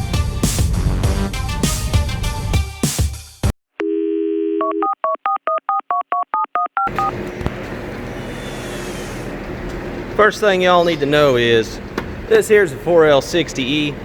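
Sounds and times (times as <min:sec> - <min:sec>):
electronic music: 0:00.0 - 0:03.3
telephone dial tone: 0:03.8 - 0:07.2.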